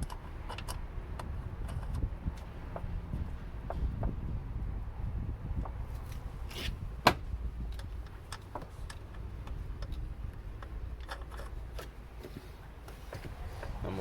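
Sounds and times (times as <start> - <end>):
metallic clicks of tools and nuts: 0.0 - 2.9, 7.6 - 12.0
steady low rumble: 0.0 - 12.2.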